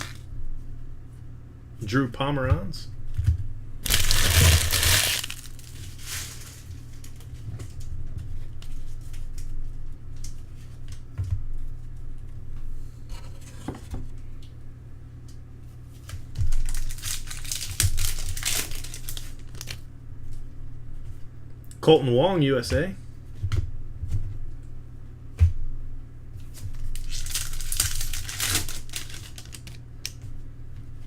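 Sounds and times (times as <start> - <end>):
cards being handled: 0.0 - 0.2, 3.8 - 6.6
wrapper tearing and crinkling: 0.0 - 0.2, 3.8 - 6.7, 16.5 - 19.8, 26.8 - 29.8
steady low hum: 0.0 - 31.0.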